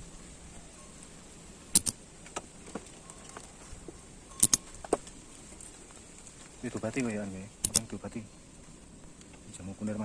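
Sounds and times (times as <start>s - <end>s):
sharp clicks: 1.7s - 2.0s, 4.4s - 4.7s, 7.6s - 8.0s.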